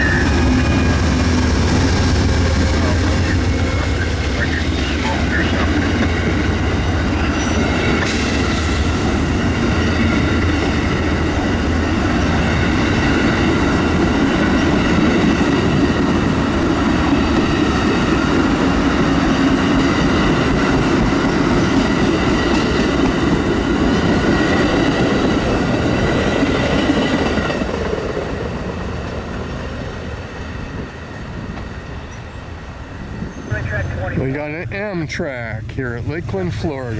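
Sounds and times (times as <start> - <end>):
high ringing tones: 0.0 - 1.2
train wheels rumbling on rail: 0.0 - 36.9
clickety-clack of wheels: 4.8 - 29.5.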